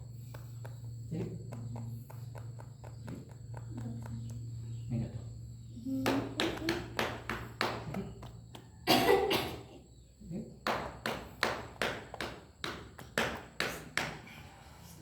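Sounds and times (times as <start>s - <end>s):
person coughing: 8.9s - 9.7s.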